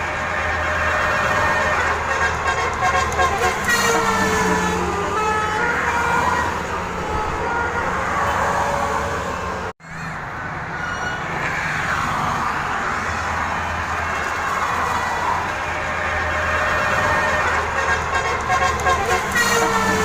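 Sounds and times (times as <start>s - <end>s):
bus horn playing a melody: 0.0s - 9.7s, 15.4s - 20.0s
bus engine running: 0.0s - 20.0s.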